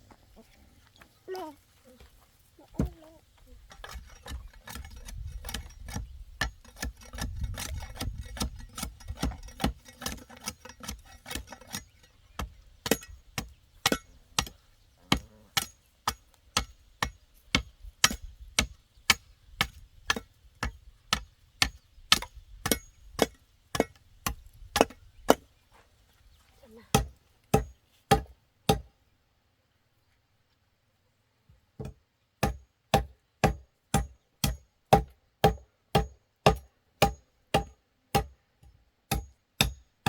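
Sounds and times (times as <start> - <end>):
hand tool striking wood: 3.7 - 25.4, 26.9 - 28.9, 31.8 - 39.9.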